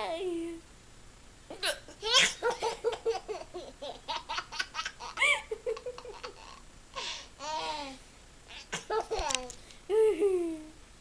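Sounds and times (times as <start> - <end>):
toddler laughing: 1.5 - 9.5.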